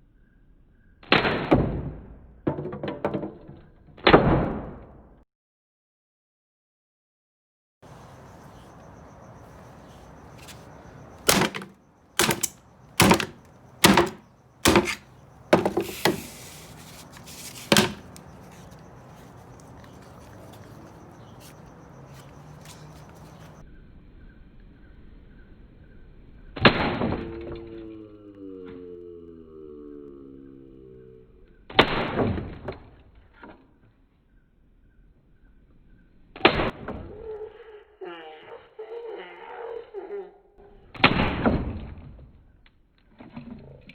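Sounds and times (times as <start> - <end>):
hammer crunching soda cans: 10.4 - 23.6
small knocks: 11.2 - 21.5.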